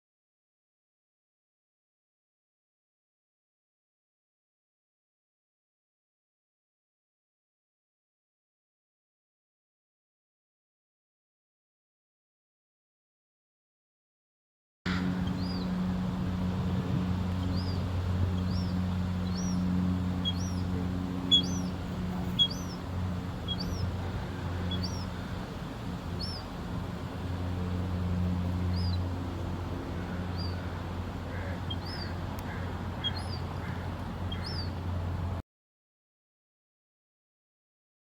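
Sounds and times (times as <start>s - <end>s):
steady low hum: 14.9s - 35.4s
bird chirping: 15.2s - 15.8s, 17.4s - 25.4s, 26.0s - 26.5s, 28.7s - 29.1s, 30.3s - 30.7s, 31.3s - 34.8s.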